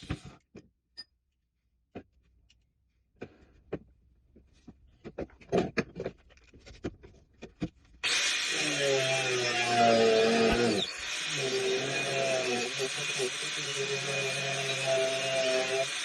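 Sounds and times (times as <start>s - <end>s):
power tool: 8.0s - 16.0s.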